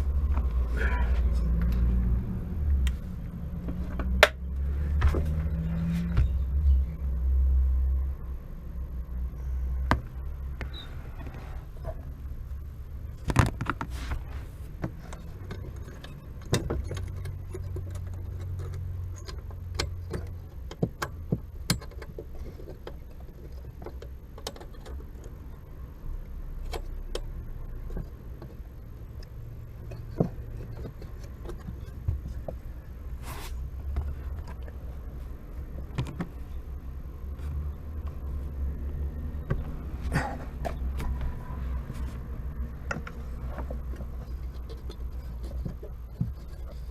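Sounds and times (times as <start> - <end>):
steady low rumble: 0.0 - 20.7.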